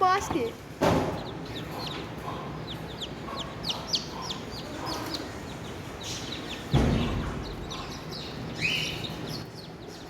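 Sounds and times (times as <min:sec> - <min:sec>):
chicks peeping: 0:00.0 - 0:10.0
sudden thump: 0:06.7 - 0:07.4.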